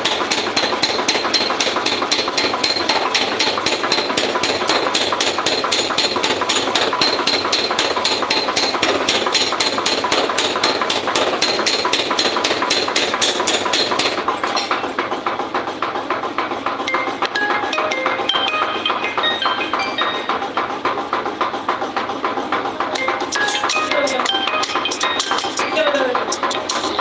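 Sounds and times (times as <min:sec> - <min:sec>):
hammer striking metal: 0:00.0 - 0:15.2, 0:22.8 - 0:27.0.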